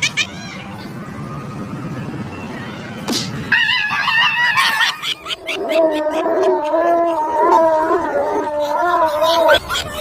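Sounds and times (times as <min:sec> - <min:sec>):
dog howling: 0:05.5 - 0:09.6.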